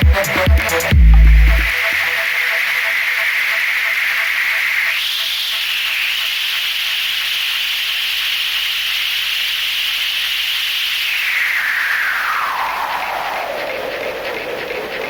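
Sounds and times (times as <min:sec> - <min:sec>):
synthesized noise sweep: 0:00.0 - 0:06.2, 0:11.2 - 0:15.0.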